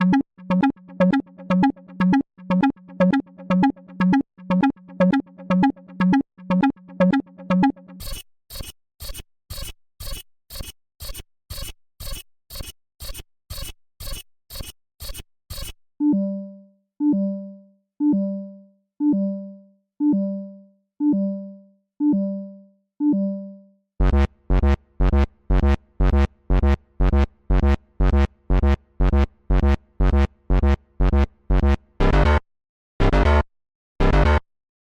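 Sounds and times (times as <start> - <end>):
harsh rapid alarm buzz: 24.0 - 27.2.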